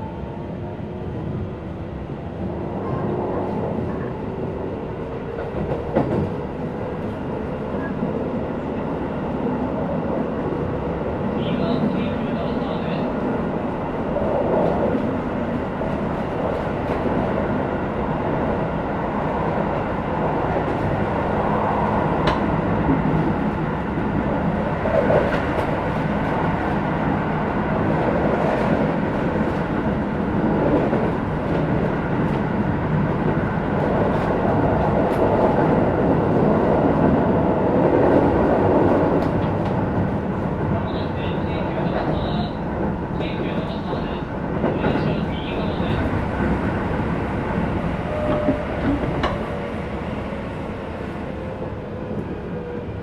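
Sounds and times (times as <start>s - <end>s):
train wheels rumbling on rail: 0.0s - 53.0s
rail-joint clicks: 22.2s - 22.6s, 48.1s - 49.7s.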